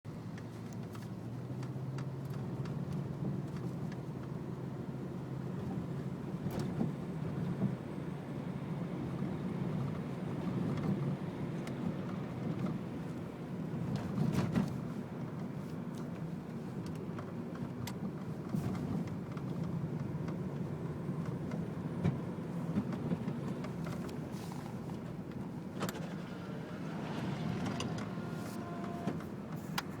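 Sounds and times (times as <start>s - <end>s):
car engine running: 19.2s - 30.0s.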